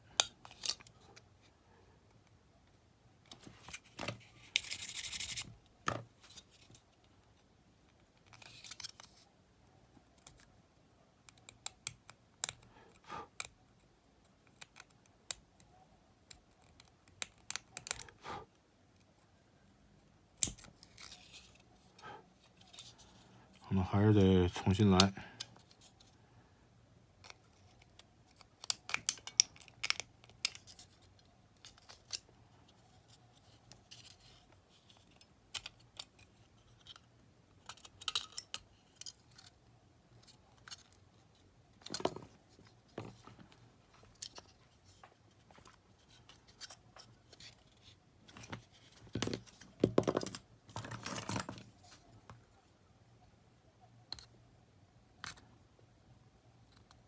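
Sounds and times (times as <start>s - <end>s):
small metal parts and tools clicking: 4.0s - 6.8s, 16.3s - 18.2s, 27.2s - 39.6s, 40.2s - 52.4s.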